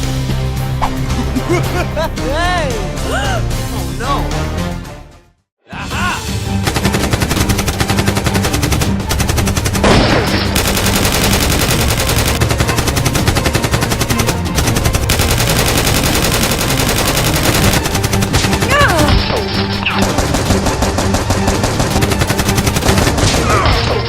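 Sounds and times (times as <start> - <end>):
automatic gunfire bursts: 10.6 - 19.0, 20.1 - 23.3.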